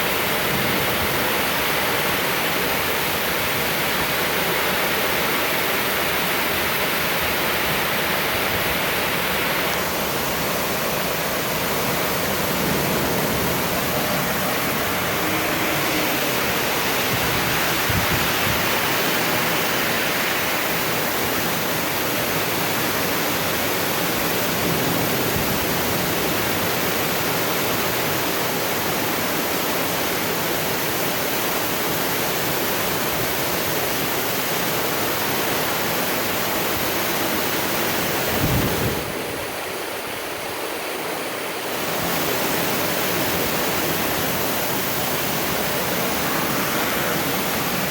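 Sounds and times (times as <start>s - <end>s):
heavy rain pouring: 0.0s - 32.0s, 41.6s - 47.9s.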